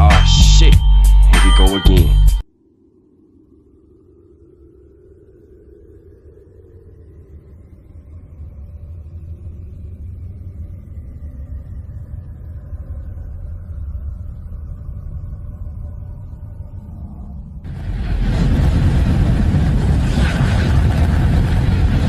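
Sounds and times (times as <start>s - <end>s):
deep rumble: 2.4s - 22.0s
loud rushing noise: 17.7s - 22.0s.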